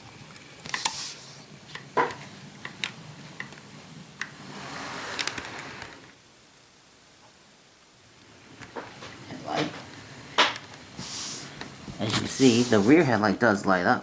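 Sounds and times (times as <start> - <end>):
hiss of passing train: 0.0 - 6.2, 8.3 - 13.9.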